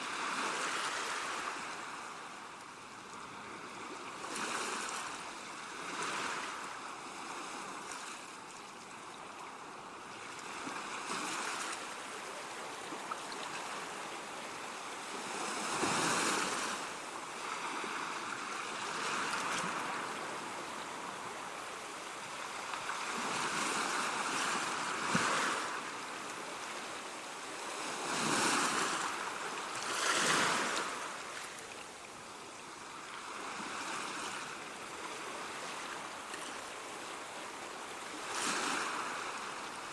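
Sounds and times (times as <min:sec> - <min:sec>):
ocean waves breaking: 0:10.3 - 0:39.9.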